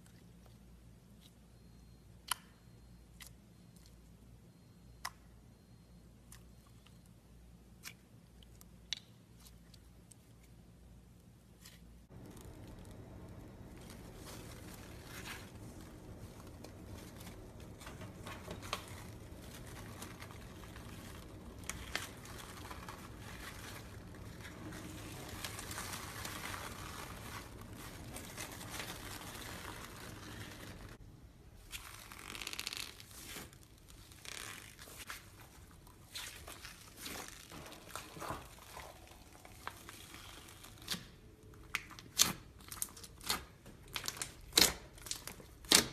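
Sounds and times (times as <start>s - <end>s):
slime squishing and crackling: 11.6s - 31.0s, 31.6s - 45.9s.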